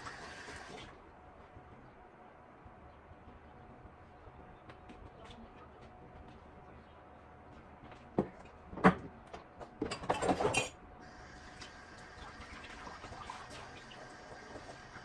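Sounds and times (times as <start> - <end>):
tap water running: 0.0 - 1.0, 11.0 - 15.0
dishes clattering in sink: 9.8 - 10.8.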